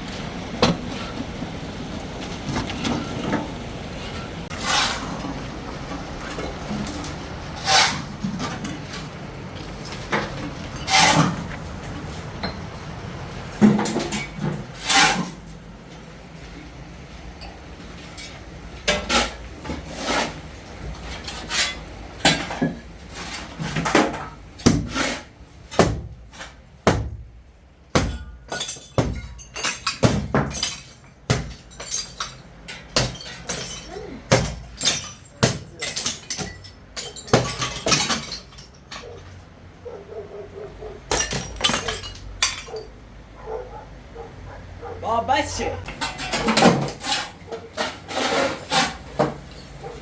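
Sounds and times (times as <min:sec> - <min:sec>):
hard objects knocking and clinking: 0:28.0 - 0:39.4, 0:41.1 - 0:42.9.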